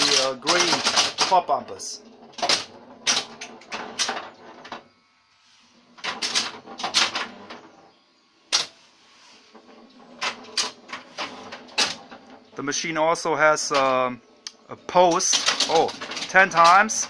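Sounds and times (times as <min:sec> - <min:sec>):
pinball machine clacking: 0:00.0 - 0:04.8, 0:06.0 - 0:07.8, 0:09.7 - 0:14.2, 0:14.8 - 0:17.0.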